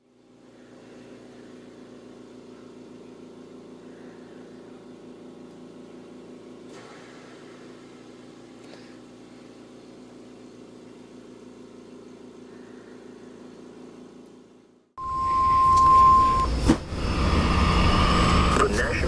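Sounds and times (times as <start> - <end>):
pulsing motor hum: 0.0 - 19.0
brief noise: 15.0 - 18.8.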